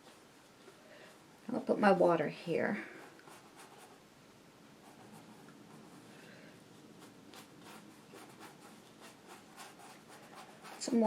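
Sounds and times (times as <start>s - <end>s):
brush stroking canvas: 4.8s - 11.0s.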